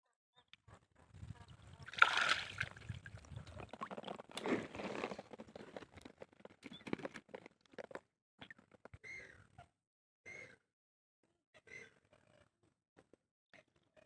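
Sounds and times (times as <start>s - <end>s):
water splashing and sloshing: 1.8s - 5.1s.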